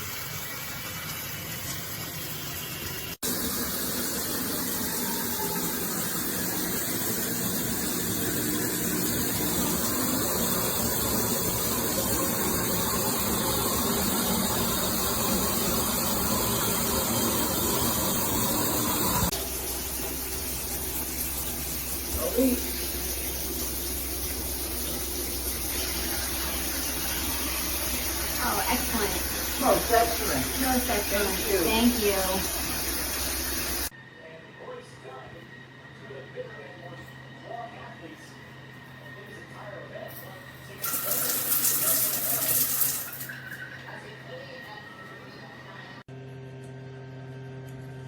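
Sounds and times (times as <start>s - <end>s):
shower water spraying: 0.0s - 33.9s, 40.7s - 43.9s.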